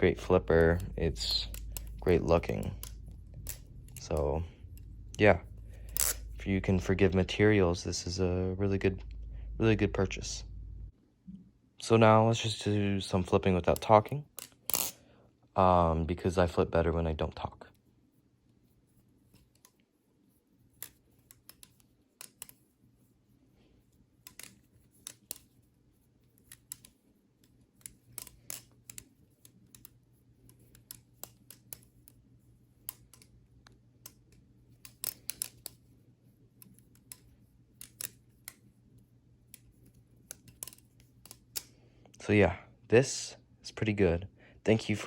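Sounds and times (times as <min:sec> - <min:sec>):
butterfly knife clicking and clacking: 0:00.0 - 0:04.9, 0:05.7 - 0:06.4, 0:24.2 - 0:25.5, 0:27.8 - 0:29.1, 0:34.1 - 0:35.8, 0:36.6 - 0:38.6, 0:39.5 - 0:41.7.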